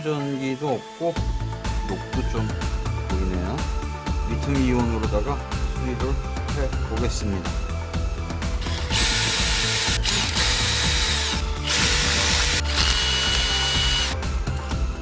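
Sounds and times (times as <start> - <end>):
electric drill motor whining: 8.6 - 14.2.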